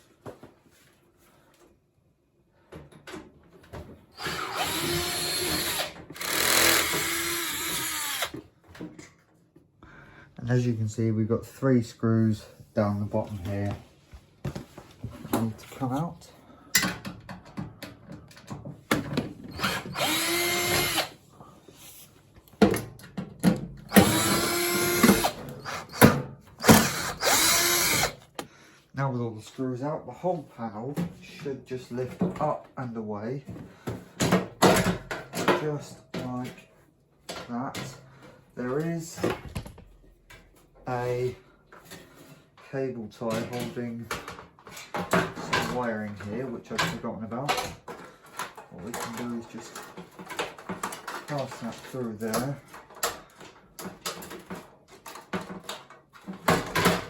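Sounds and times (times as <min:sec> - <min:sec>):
cordless screwdriver motor whine: 0:04.2 - 0:08.3, 0:19.6 - 0:21.1, 0:26.7 - 0:28.1.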